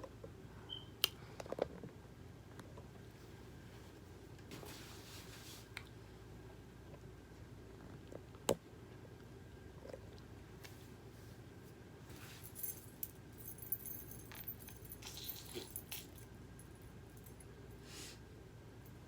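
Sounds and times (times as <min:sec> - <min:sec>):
soft high jingle: 0:12.1 - 0:17.5.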